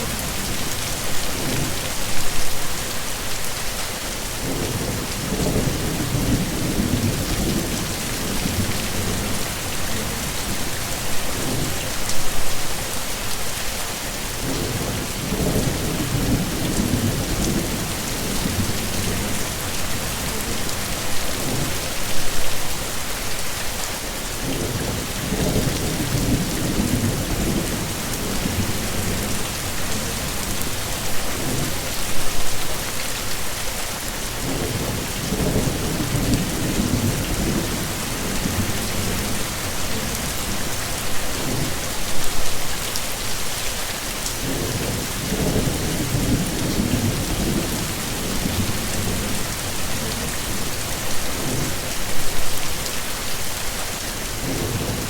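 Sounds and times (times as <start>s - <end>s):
heavy rain hissing: 0.0s - 55.0s
low thunder rumbling: 24.5s - 31.8s.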